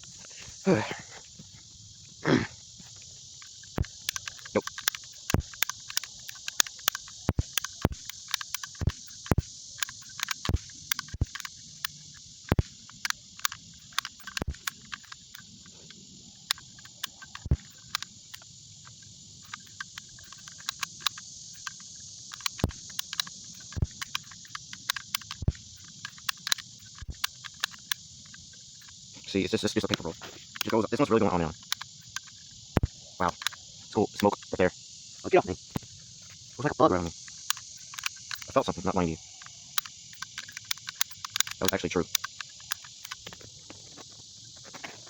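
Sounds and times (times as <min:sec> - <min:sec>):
insects chirring: 0:00.0 - 0:45.0
paper caps popping: 0:03.0 - 0:15.5.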